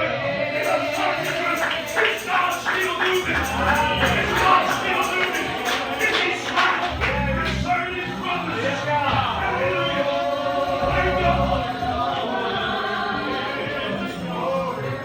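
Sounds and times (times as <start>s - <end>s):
voices: 0.0s - 15.0s
church music: 0.3s - 15.0s
tambourine jingling: 0.5s - 10.3s.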